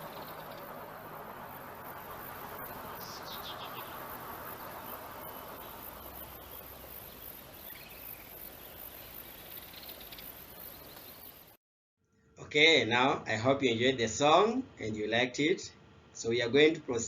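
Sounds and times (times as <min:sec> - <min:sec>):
faint high bird chirps: 0:00.0 - 0:00.7, 0:02.6 - 0:12.4
steady outdoor hiss: 0:00.0 - 0:11.6, 0:12.2 - 0:17.0.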